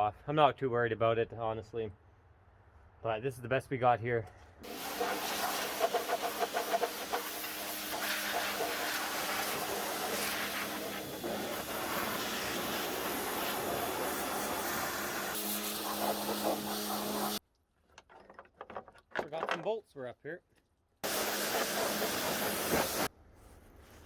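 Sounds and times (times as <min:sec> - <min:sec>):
electric pump motor hum: 0:04.6 - 0:17.4, 0:21.0 - 0:23.1
water jet hissing: 0:04.6 - 0:17.4, 0:21.0 - 0:23.1.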